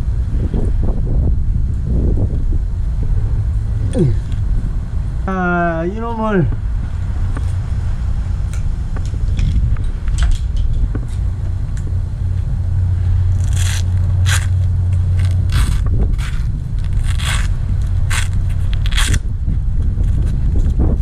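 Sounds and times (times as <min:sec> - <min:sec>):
steady low rumble: 0:00.0 - 0:21.0
scraping and rustling strokes: 0:12.3 - 0:21.0.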